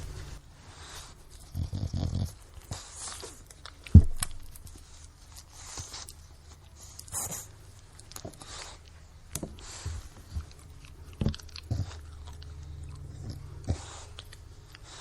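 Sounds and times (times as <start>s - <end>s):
dog breathing noisily: 8.2s - 15.0s.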